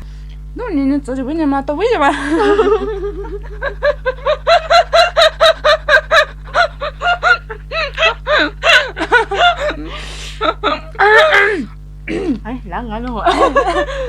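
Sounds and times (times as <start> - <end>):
person laughing: 2.0 - 11.7, 13.2 - 14.0.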